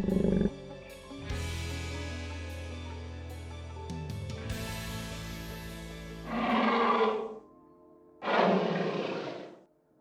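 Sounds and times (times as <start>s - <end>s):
loud rough animal call: 6.2s - 7.4s, 8.2s - 9.6s.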